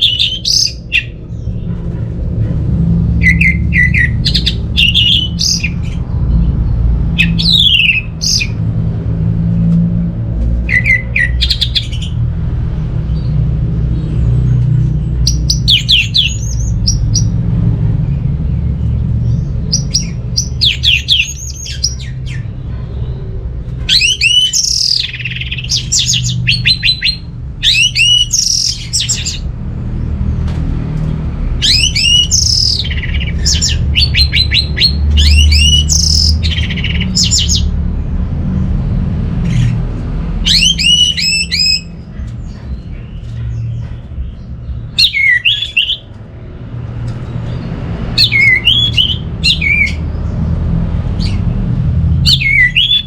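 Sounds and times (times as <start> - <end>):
thrush singing whistled notes: 0.0 - 1.5, 3.1 - 6.0, 7.2 - 8.6, 10.7 - 12.2, 15.3 - 17.3, 19.6 - 22.5, 23.9 - 29.5, 31.6 - 37.7, 40.4 - 42.0, 44.3 - 46.1, 48.2 - 50.1, 52.2 - 53.0.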